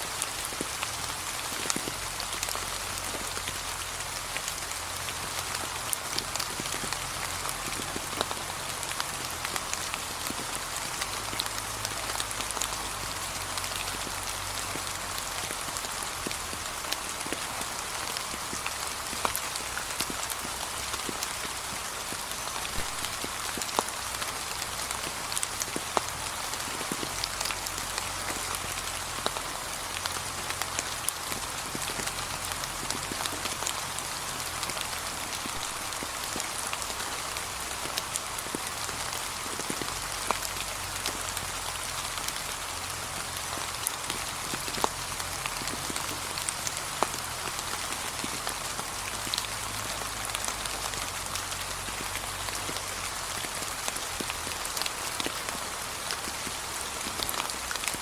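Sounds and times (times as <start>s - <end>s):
rain on leaves: 0.0s - 58.0s.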